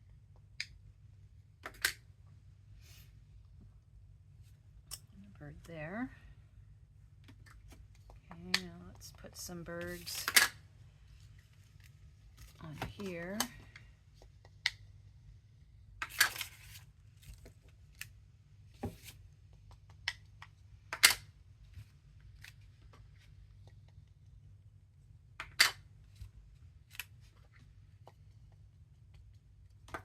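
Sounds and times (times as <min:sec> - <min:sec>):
faint low hum: 0:00.0 - 0:29.9
paper rustle: 0:16.2 - 0:17.6.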